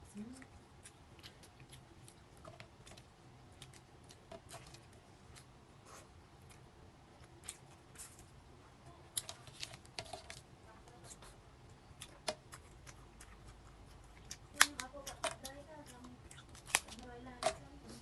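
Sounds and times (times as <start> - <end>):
crab shell cracking: 12.0 - 17.6.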